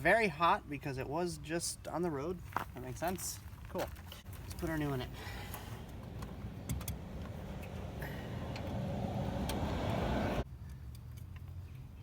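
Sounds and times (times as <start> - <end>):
steady low rumble: 4.1 - 10.4.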